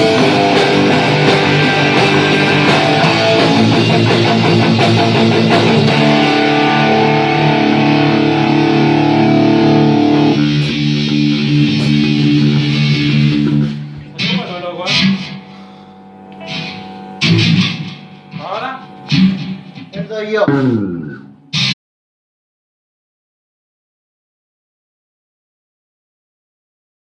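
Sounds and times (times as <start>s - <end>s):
distorted electric guitar: 0.0s - 21.8s
drums: 0.0s - 21.8s.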